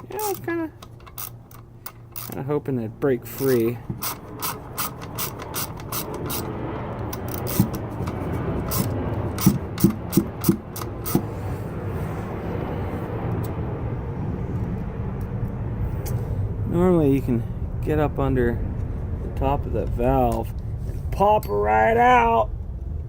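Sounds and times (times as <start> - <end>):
hand ratchet clicking: 0.0 - 2.4, 3.3 - 6.5, 7.1 - 11.2
steady background hum: 0.0 - 23.0
sharp metallic clicks: 3.3 - 11.2.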